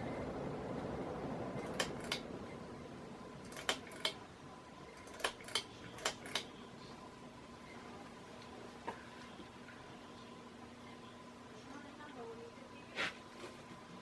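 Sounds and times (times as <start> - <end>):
ceiling fan whoosh: 0.0 - 5.0
sharp metallic clicks: 1.6 - 2.3, 3.4 - 4.2, 5.0 - 6.5.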